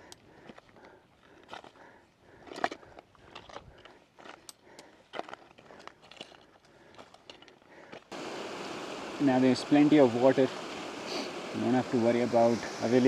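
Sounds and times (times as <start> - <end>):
footsteps crunching on stony ground: 0.0 - 8.1
mountain stream rushing: 8.1 - 13.0.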